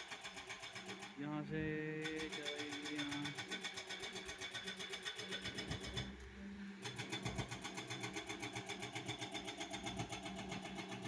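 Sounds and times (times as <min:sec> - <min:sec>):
engine running with rapid pulse: 0:00.0 - 0:11.0.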